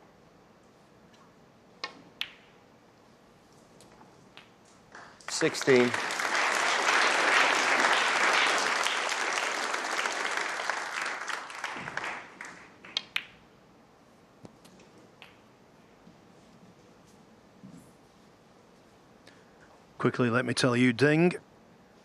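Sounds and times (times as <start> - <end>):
snooker balls clicking: 1.8 - 2.6, 3.8 - 5.2, 12.8 - 13.5, 14.4 - 15.5
crowd applauding: 5.0 - 13.0.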